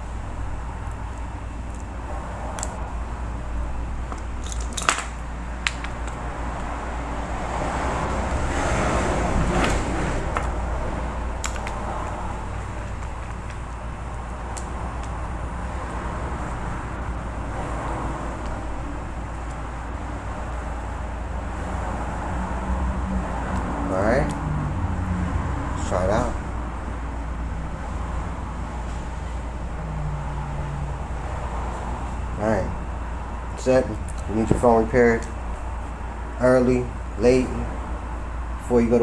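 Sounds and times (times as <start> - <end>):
low background hum: 0.0 - 39.0
handling noises: 0.1 - 7.0, 8.1 - 24.5, 31.7 - 39.0.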